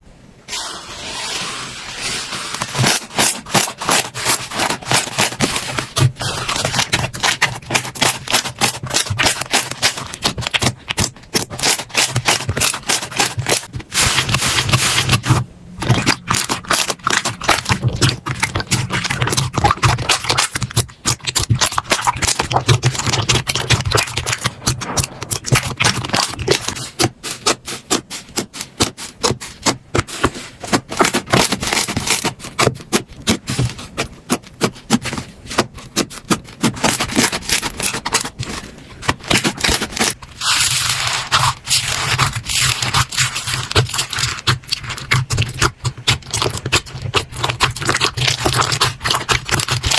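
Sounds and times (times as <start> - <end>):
slime squeezed by hand: 0.5 - 32.6.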